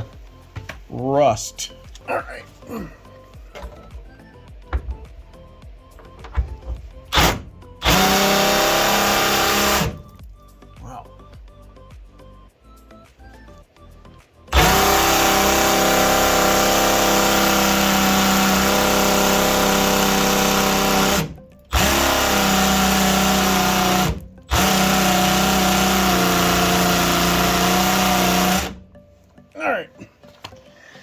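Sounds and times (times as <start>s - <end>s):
power tool running: 7.1s - 10.2s, 14.5s - 29.0s.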